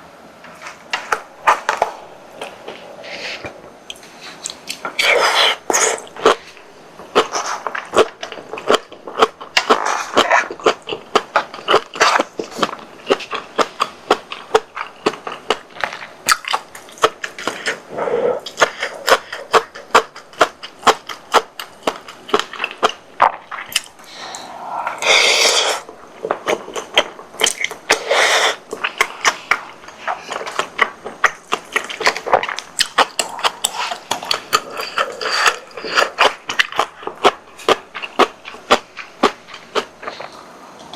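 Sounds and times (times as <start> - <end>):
close-miked wet chewing: 0.6 - 40.9
breathy bursts: 24.0 - 25.9.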